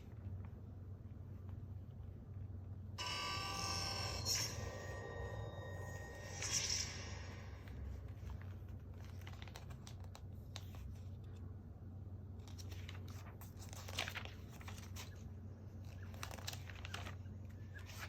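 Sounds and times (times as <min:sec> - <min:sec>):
steady low hum: 0:00.0 - 0:18.0
crinkling rustles: 0:07.9 - 0:11.5, 0:12.3 - 0:18.0.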